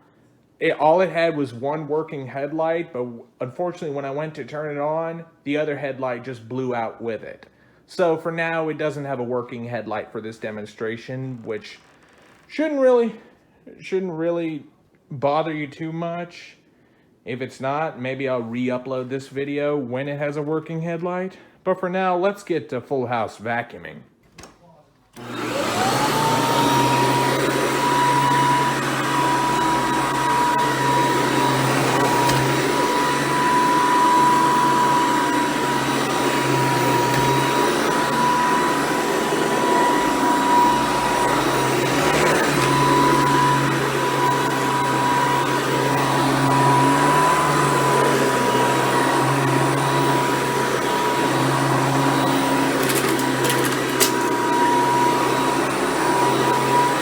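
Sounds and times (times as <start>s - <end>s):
vacuum cleaner motor whine: 25.2s - 57.0s.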